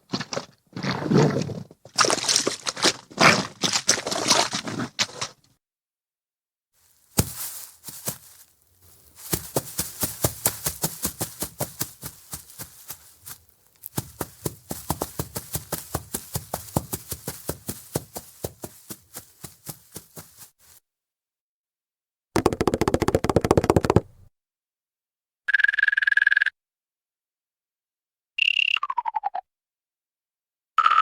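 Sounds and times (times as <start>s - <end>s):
cartoon running footsteps: 7.0s - 20.8s, 22.4s - 24.3s.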